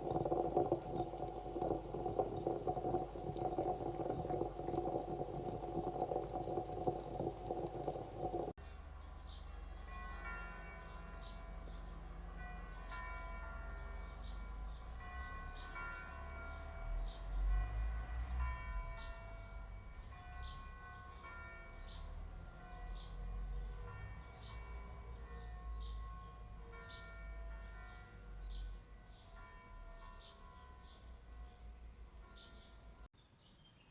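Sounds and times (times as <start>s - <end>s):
church bells ringing: 9.8s - 33.0s.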